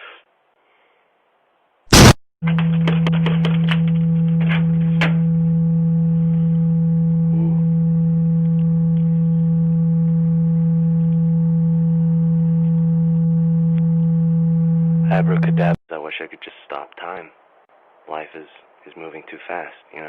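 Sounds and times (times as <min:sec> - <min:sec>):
loud electrical hum: 0:01.9 - 0:15.8.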